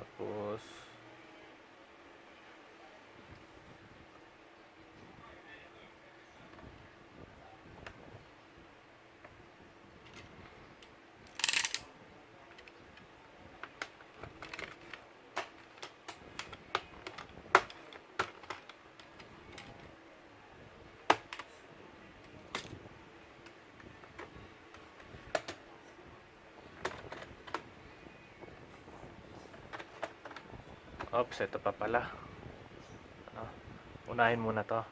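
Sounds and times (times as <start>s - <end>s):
small tools clicking on plastic: 11.3s - 11.8s, 13.6s - 19.8s.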